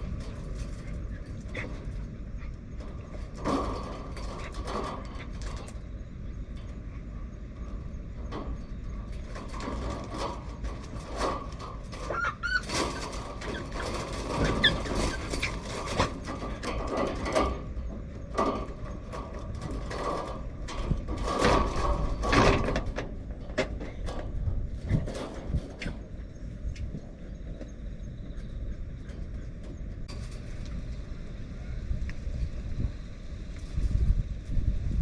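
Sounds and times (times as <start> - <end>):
low rumble of wind: 0.0 - 35.0
loose fittings rattling and knocking: 8.2 - 26.0.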